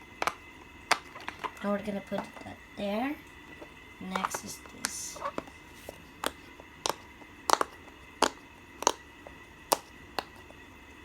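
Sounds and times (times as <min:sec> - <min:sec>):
fidget toy popping: 0:00.2 - 0:01.5, 0:06.2 - 0:10.6.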